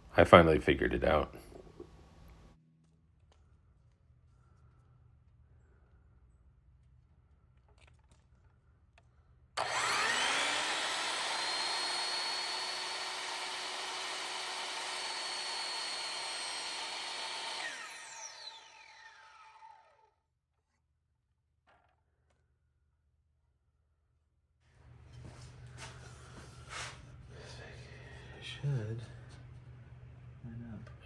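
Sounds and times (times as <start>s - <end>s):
power tool motor whine: 9.6s - 20.1s.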